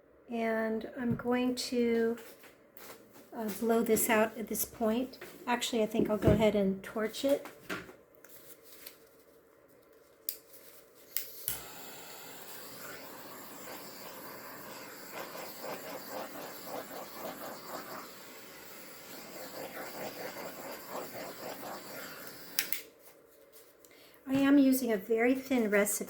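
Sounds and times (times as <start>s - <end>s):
torch flame hissing: 11.0s - 22.9s
torch lighting click: 11.1s - 22.9s
torch shut-off clicks: 11.1s - 22.9s.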